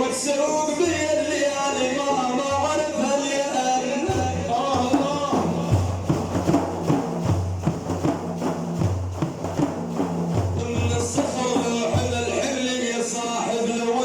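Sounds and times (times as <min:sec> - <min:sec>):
singing voice: 0:00.0 - 0:06.5, 0:10.5 - 0:14.0
steady drum beat: 0:04.1 - 0:12.7.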